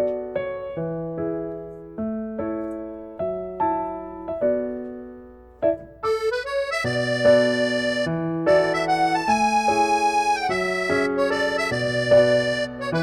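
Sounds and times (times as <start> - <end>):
piano chords: 0.0 - 13.0
held accordion notes: 6.0 - 13.0.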